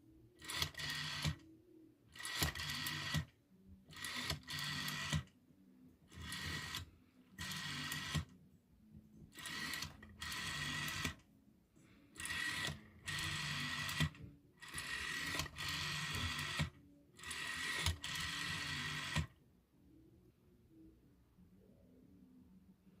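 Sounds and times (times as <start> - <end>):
rotary dial clicking and whirring: 0.4 - 1.4, 2.2 - 3.3, 3.9 - 5.3, 6.1 - 8.3, 9.3 - 11.2, 12.2 - 19.3.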